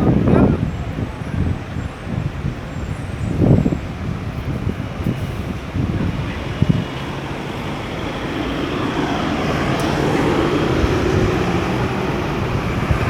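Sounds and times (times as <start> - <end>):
vehicle engine running: 5.4 - 13.0.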